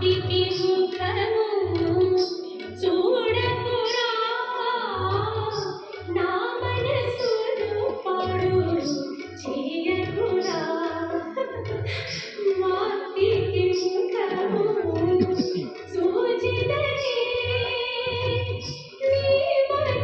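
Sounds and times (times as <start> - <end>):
woman singing: 0.0 - 20.0
steady drum beat: 14.2 - 15.8.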